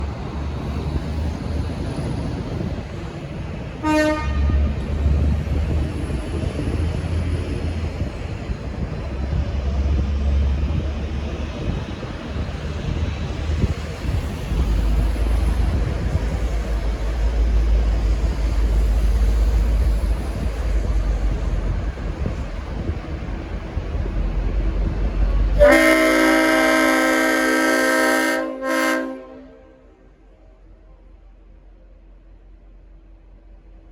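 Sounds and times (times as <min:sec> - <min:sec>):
diesel locomotive rumble: 0:00.0 - 0:33.9
locomotive horn toot: 0:03.8 - 0:04.8, 0:25.5 - 0:30.1.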